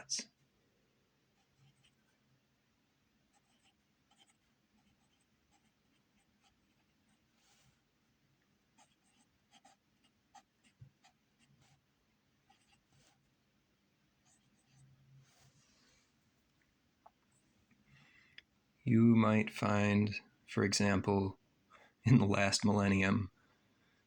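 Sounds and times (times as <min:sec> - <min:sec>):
pen scratching on paper: 0:01.4 - 0:02.1, 0:03.3 - 0:07.8, 0:08.7 - 0:13.3, 0:14.2 - 0:15.5.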